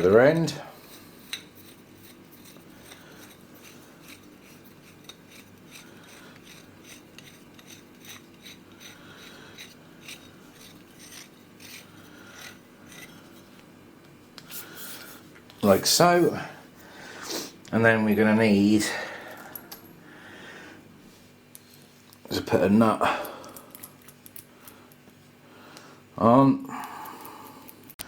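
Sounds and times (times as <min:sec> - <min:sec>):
metal threads scraping: 0:00.8 - 0:13.7.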